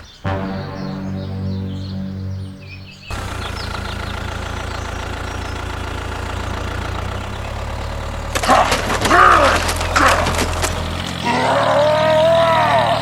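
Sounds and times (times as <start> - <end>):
tractor engine idling: 2.7 - 13.0.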